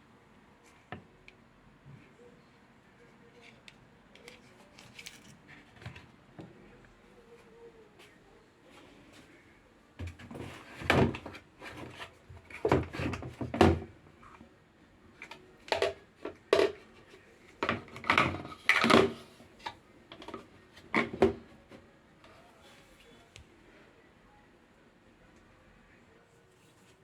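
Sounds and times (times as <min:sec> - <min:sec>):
knocks and clunks of handling: 0:10.0 - 0:13.9, 0:17.6 - 0:21.8.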